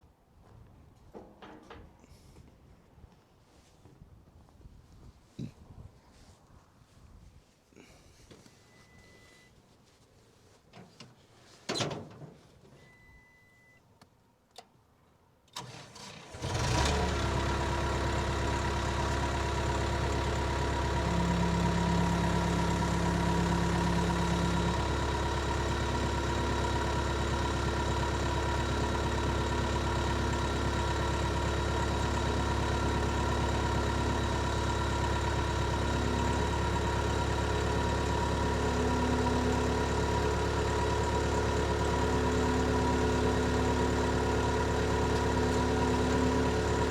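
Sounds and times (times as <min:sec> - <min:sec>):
engine starting and idling: 0:15.5 - 0:46.9.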